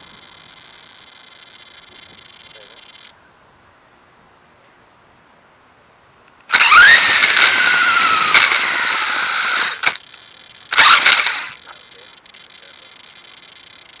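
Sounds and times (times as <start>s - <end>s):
rattling road noise: 0.0s - 3.2s, 6.2s - 14.0s
electric motor whining: 6.5s - 14.0s.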